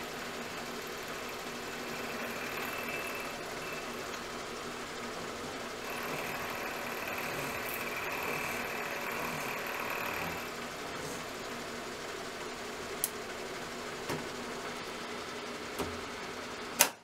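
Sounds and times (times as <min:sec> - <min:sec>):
cutter machining metal: 0:00.0 - 0:11.5
milling machine running: 0:00.0 - 0:16.8.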